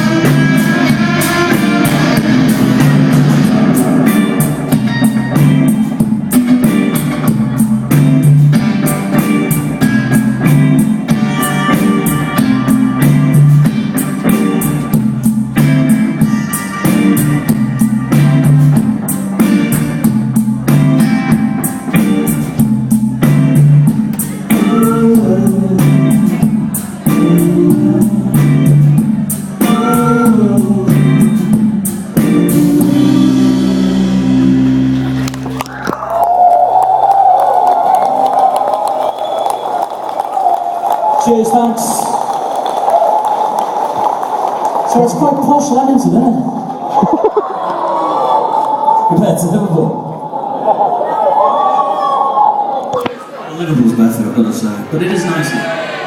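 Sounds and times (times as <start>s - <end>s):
steady drum beat: 0.0s - 33.4s
live rock band playing: 0.0s - 35.8s
electric guitars: 0.0s - 36.5s.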